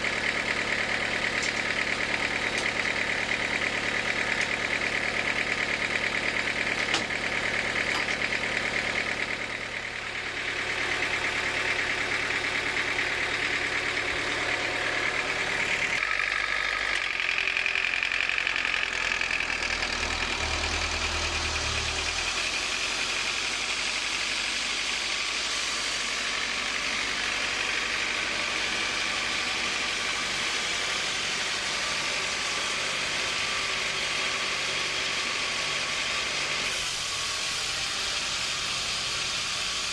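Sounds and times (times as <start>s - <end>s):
sawmill machinery drone and whine: 0.0s - 39.9s.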